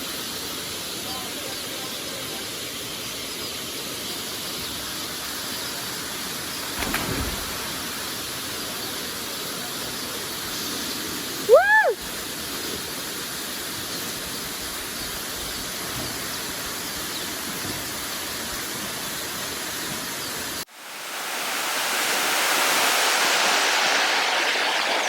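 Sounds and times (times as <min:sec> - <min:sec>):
waterfall rushing: 0:05.1 - 0:14.6, 0:20.8 - 0:25.0.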